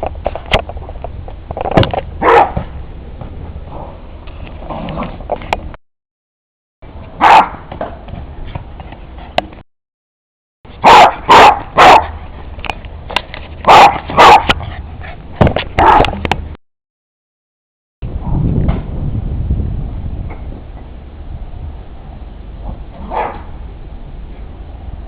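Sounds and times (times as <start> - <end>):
dog barking: 2.2 - 2.6, 7.2 - 7.6, 10.8 - 12.2, 13.7 - 14.5, 15.8 - 16.1, 23.1 - 23.5.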